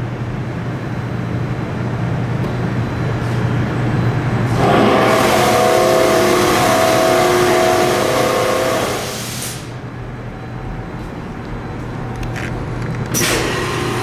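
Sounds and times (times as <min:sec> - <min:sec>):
low machine hum: 0:00.0 - 0:14.0
cnc router rushing noise: 0:02.9 - 0:09.7.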